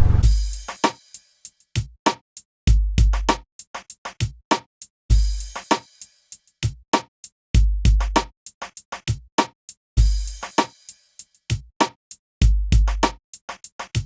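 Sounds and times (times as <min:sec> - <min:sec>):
drum machine beat: 0:00.2 - 0:00.9, 0:02.7 - 0:05.8, 0:06.6 - 0:10.7, 0:11.5 - 0:11.7, 0:12.4 - 0:14.0.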